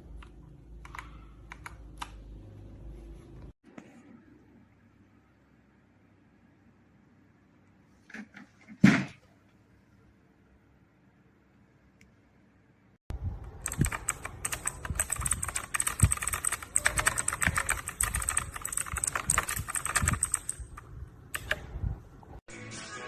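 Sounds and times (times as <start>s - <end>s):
typing on mechanical keyboard: 13.5s - 20.8s, 21.4s - 21.6s.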